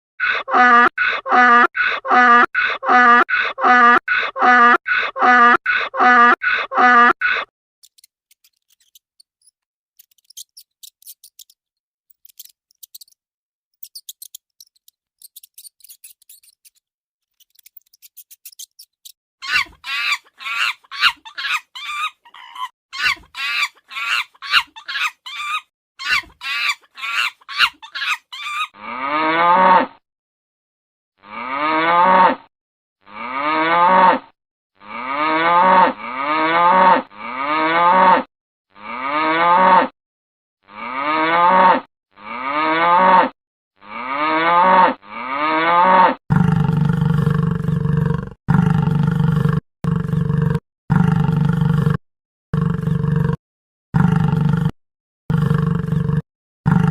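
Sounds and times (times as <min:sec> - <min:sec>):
cow mooing: 0:00.2 - 0:07.5
faint high chirping clicks: 0:07.8 - 0:19.2.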